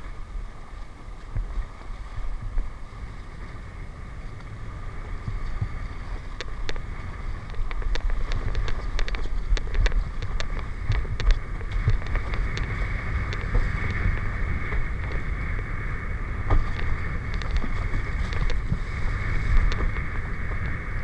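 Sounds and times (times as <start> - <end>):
wind rumbling on microphone: 0.0 - 21.0
steady hum: 2.4 - 21.0
sharp clicks: 6.2 - 15.8, 16.4 - 20.0.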